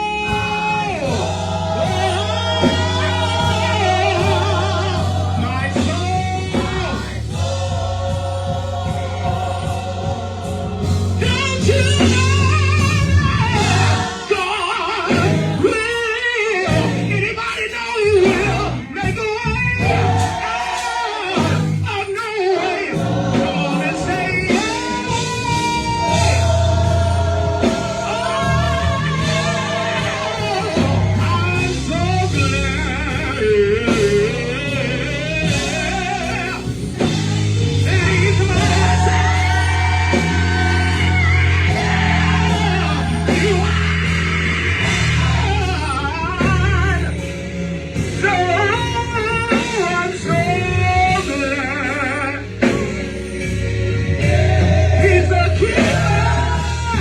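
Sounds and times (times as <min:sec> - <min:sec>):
bass line: 0:00.0 - 0:22.1, 0:22.8 - 0:57.0
drums: 0:00.0 - 0:57.0
gospel choir singing: 0:00.0 - 0:57.0
live band: 0:00.0 - 0:57.0.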